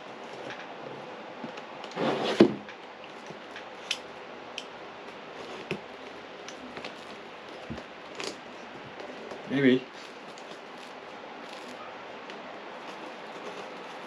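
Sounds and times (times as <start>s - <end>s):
cardboard scraping rustle: 1.9s - 2.7s, 12.7s - 14.0s.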